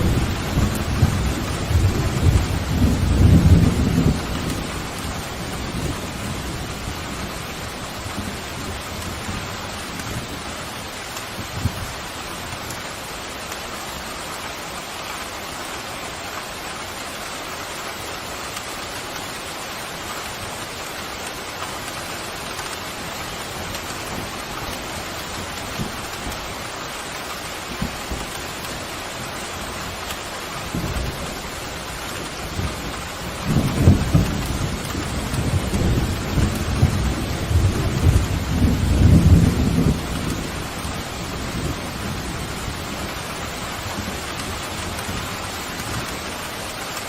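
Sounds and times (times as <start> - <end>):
thunder rumbling: 0.0 - 12.0, 29.9 - 46.7
heavy rain: 0.0 - 47.0.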